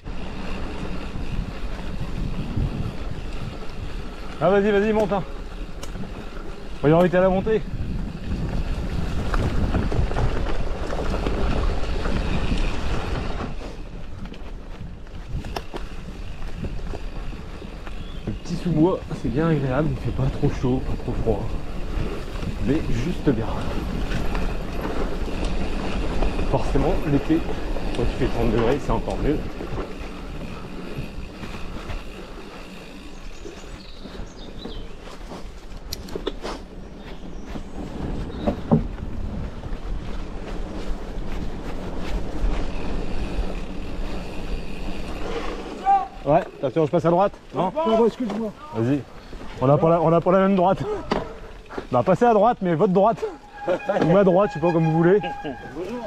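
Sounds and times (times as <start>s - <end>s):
wind buffeting microphone: 0.0s - 46.3s
bike rattles and clicks: 0.0s - 56.0s
bird chirping: 17.8s - 19.5s, 33.0s - 35.2s.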